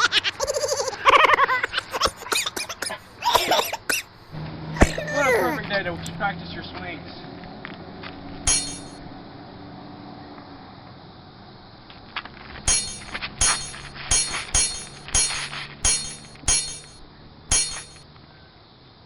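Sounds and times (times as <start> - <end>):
sharp impact sound effects: 8.5 - 9.0, 12.7 - 18.0.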